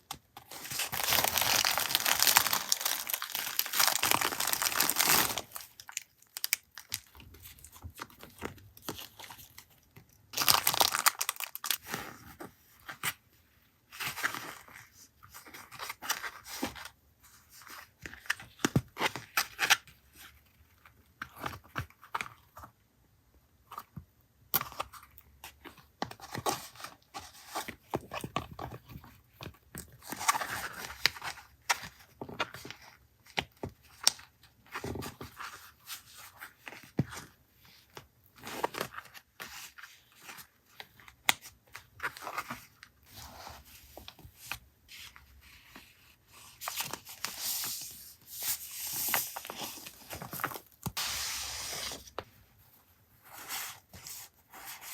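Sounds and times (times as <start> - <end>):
paper tearing and crinkling: 0.5 - 6.0.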